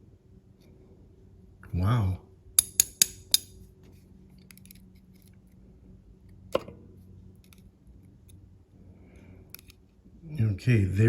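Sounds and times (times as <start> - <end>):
small metal clicks: 2.6 - 3.6, 4.4 - 5.5, 9.5 - 9.8.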